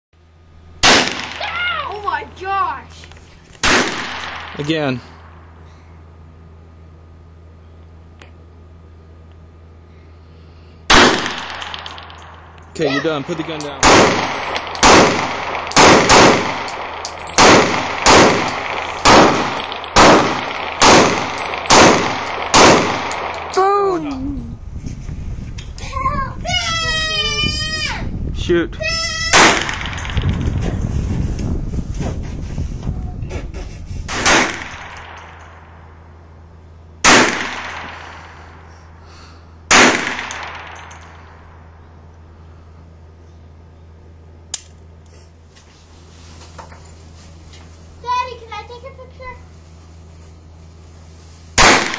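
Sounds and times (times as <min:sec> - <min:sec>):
pistol shots: 0:00.8 - 0:01.4, 0:03.6 - 0:04.7, 0:10.9 - 0:12.4, 0:13.2 - 0:23.6, 0:29.3 - 0:30.3, 0:34.1 - 0:35.6, 0:37.0 - 0:38.4, 0:39.7 - 0:41.2, 0:51.6 - 0:51.9.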